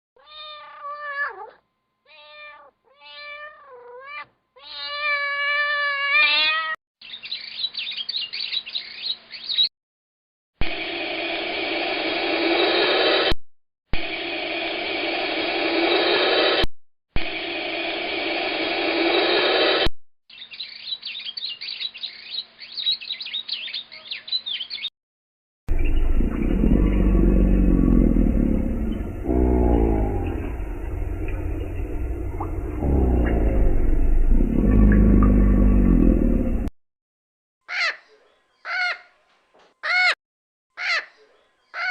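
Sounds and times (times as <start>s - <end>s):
cat meowing: 0.2s - 6.8s
high chirpy cat calls: 0.2s - 6.8s
birds chirping: 7.0s - 9.7s, 20.3s - 24.9s, 25.7s - 36.7s
low rumbling noise: 25.7s - 36.7s.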